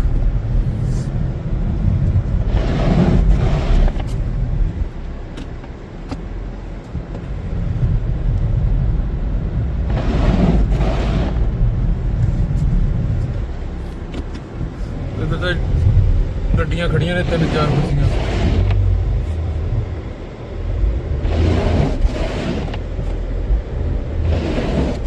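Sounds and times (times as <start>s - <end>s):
car road and engine rumble: 0.0s - 25.0s
rushing swells: 9.9s - 25.0s.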